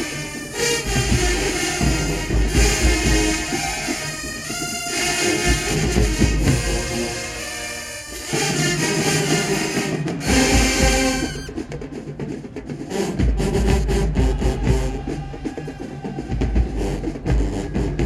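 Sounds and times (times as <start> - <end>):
drums with sharp strokes: 0.0 - 18.0
marching band brass: 0.0 - 18.0.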